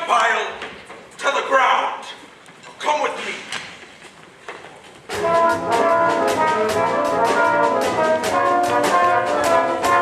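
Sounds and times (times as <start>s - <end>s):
brass-heavy orchestra music: 5.1s - 10.0s.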